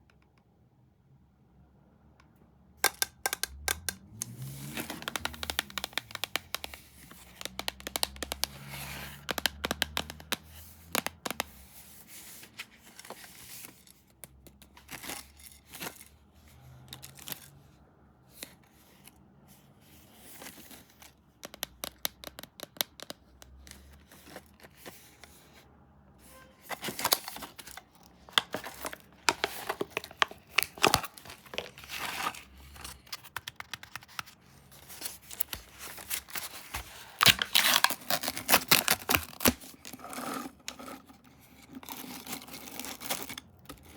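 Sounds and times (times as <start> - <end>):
packaging crinkling and tearing: 26.7 - 43.9.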